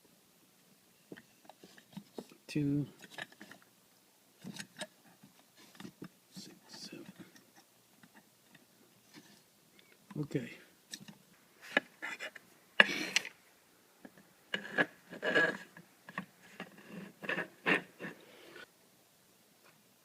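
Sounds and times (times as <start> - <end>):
scraping on wood: 11.6 - 12.4, 14.1 - 18.7.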